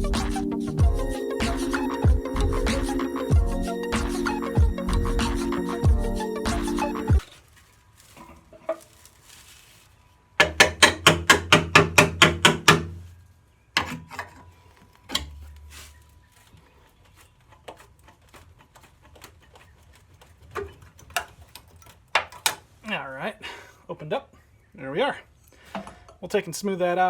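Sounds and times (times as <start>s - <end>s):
rapid knocks: 10.4s - 13.0s.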